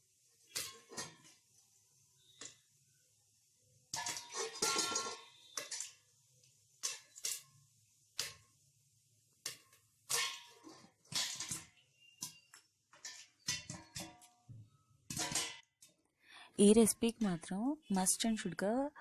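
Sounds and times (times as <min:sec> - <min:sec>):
popcorn popping against lid: 0:06.8 - 0:07.6, 0:09.4 - 0:15.9.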